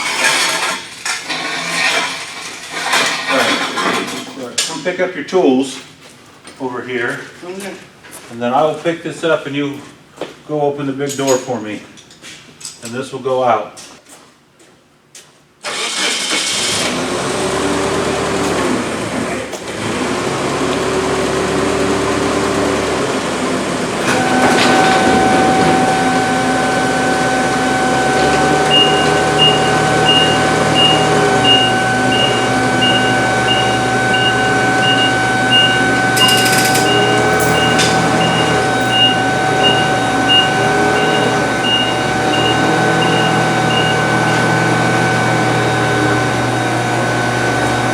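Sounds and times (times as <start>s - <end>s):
machine engine running: 17.0s - 47.9s
steady whine: 23.0s - 47.9s
high warning beeping: 24.0s - 46.4s.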